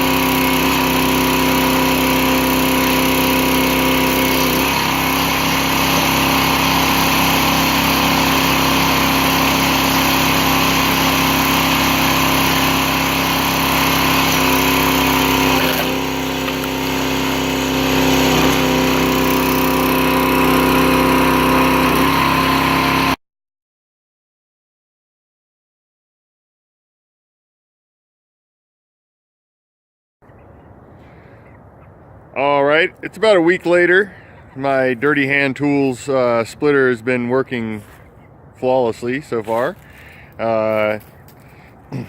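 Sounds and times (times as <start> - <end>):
log splitter engine running: 0.0 - 23.2, 38.6 - 42.0.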